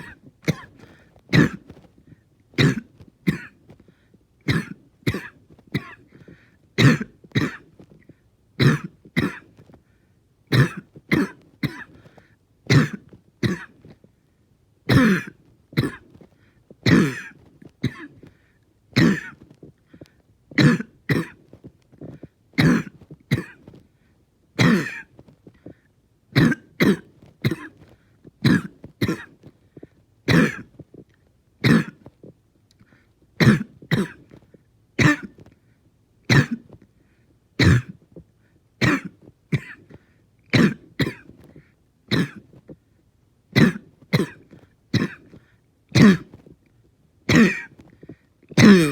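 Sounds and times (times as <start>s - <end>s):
person coughing: 0.0s - 1.9s, 2.6s - 3.7s, 4.5s - 7.8s, 8.6s - 9.6s, 10.5s - 12.1s, 12.7s - 14.0s, 14.9s - 16.2s, 16.8s - 18.3s, 19.0s - 19.5s, 20.6s - 21.4s, 22.0s - 23.8s, 24.6s - 25.2s, 26.4s - 29.5s, 30.3s - 30.8s, 31.6s - 32.1s, 33.4s - 34.4s, 35.0s - 35.5s, 36.3s - 36.8s, 37.6s - 38.0s, 38.8s - 42.6s, 43.6s - 45.4s, 46.0s - 46.4s, 47.3s - 48.9s.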